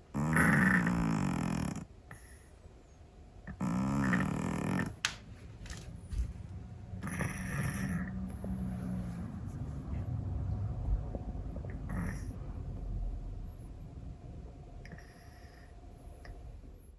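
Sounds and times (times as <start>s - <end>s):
cat snoring: 0.1s - 2.4s, 3.5s - 5.0s, 7.0s - 9.2s, 11.6s - 12.5s, 14.8s - 16.1s.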